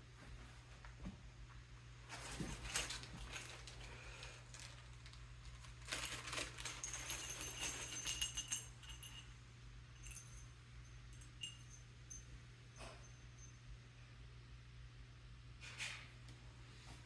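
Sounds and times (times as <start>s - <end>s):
steady low hum: 0.0s - 15.6s
small metal parts clinking: 5.9s - 9.4s, 10.0s - 10.5s, 11.1s - 13.5s.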